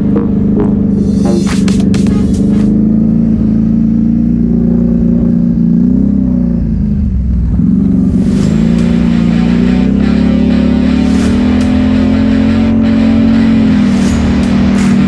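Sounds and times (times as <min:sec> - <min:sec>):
straight-piped atv engine revving: 0:00.0 - 0:15.0.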